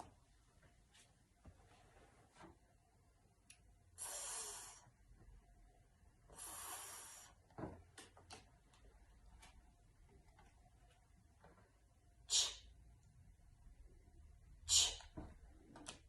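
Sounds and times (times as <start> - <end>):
woman making hissing consonant: 4.0 - 4.9, 6.4 - 7.4, 12.2 - 12.8, 14.6 - 15.2.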